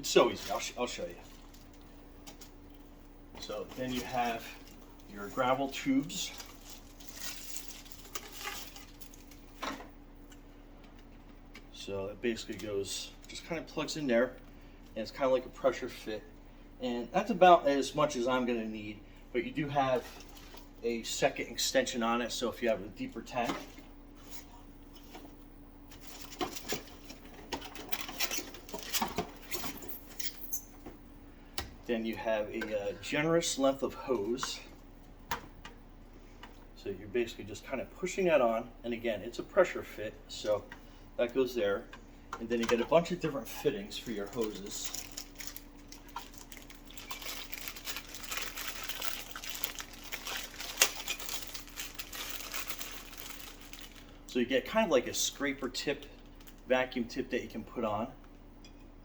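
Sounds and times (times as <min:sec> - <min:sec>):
faint steady hum: 0:00.0 - 0:59.0
packaging crinkling: 0:06.0 - 0:09.6, 0:42.9 - 0:54.2
plastic parts clicking and rustling: 0:06.3 - 0:09.9, 0:25.9 - 0:30.5, 0:43.9 - 0:54.1.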